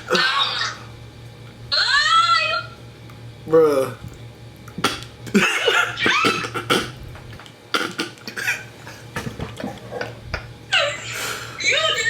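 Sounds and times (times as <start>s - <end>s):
person fake sneezing and coughing: 4.8s - 7.0s, 7.7s - 9.0s.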